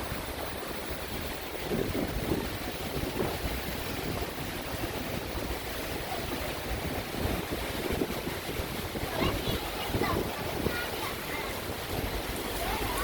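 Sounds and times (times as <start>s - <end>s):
heavy rain: 0.0s - 13.0s
wind buffeting microphone: 0.0s - 13.0s.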